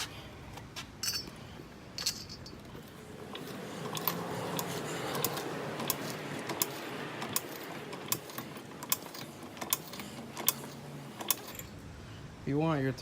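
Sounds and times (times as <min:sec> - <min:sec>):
hydraulic jack clicking: 0:02.0 - 0:11.7.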